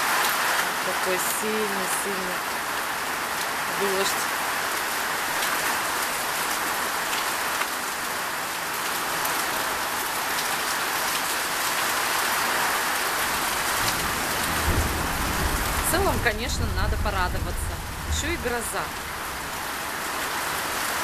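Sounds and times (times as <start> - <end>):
heavy rain downpour: 0.0 - 21.0
raindrops ticking on surfaces: 0.0 - 21.0
low rumble: 13.8 - 19.9.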